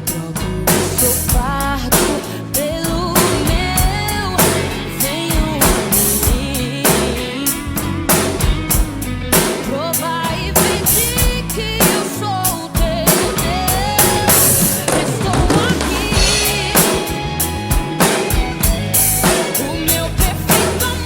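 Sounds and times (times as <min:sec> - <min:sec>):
drum kit playing: 0:00.0 - 0:21.0
wavering melody line: 0:13.5 - 0:20.5.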